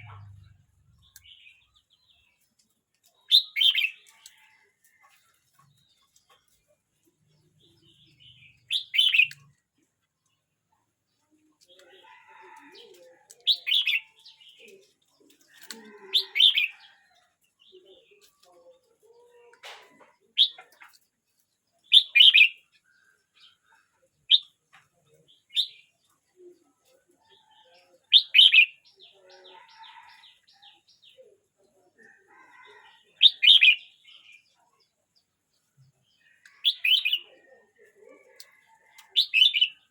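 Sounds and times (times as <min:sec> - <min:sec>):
bird singing bright phrases: 0:00.0 - 0:04.4, 0:07.2 - 0:09.5, 0:21.7 - 0:26.0, 0:35.9 - 0:37.4.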